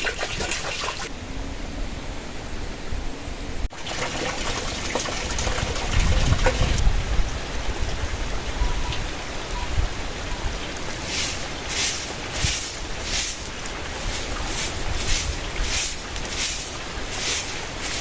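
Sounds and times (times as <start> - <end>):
strong wind blowing: 5.4 - 18.0.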